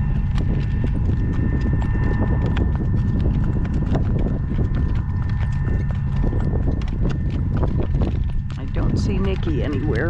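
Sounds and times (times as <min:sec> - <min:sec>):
horse hooves clip-clopping on road: 0:00.0 - 0:10.0
steady low rumble: 0:00.0 - 0:10.0.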